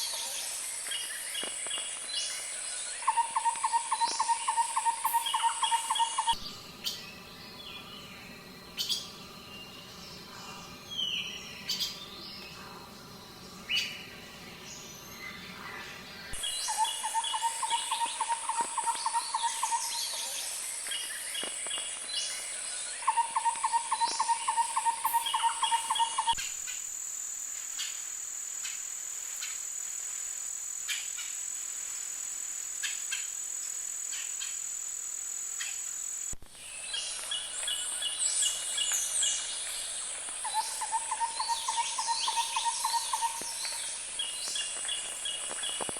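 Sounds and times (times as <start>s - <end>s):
high-pitched insect drone: 0.0s - 45.9s
birds chirping and calling: 3.0s - 21.0s, 23.0s - 26.3s, 40.4s - 45.9s.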